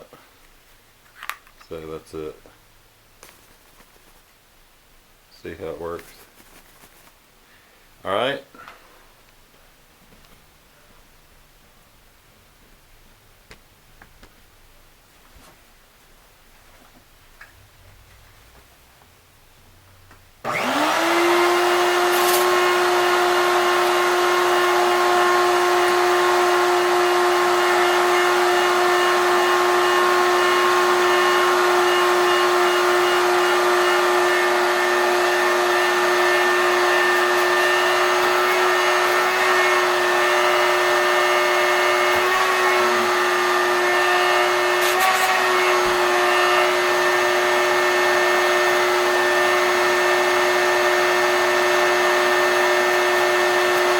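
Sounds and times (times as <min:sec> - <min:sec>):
shop vac motor running: 0:20.4 - 0:53.9.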